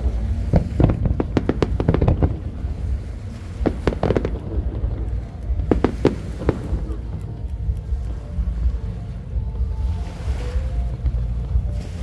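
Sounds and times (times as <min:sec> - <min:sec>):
fireworks bangs: 0:00.0 - 0:08.8
deep rumble: 0:00.0 - 0:12.0.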